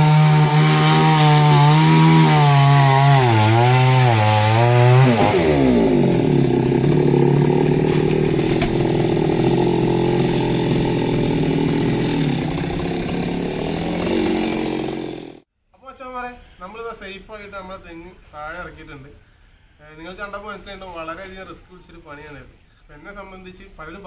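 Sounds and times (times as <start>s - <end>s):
chainsaw cutting and idling: 0.0s - 15.5s.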